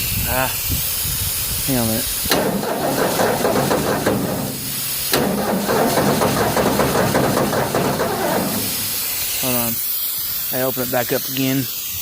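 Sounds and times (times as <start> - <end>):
engine sputtering roughly: 2.3 - 9.8.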